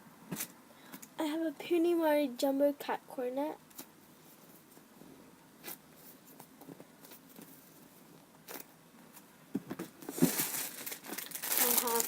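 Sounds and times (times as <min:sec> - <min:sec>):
foam toy rustling and scraping: 0:10.0 - 0:12.0.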